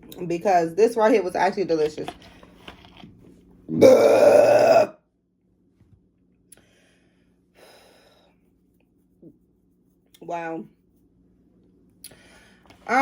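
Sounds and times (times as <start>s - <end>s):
woman belching: 3.7s - 5.0s.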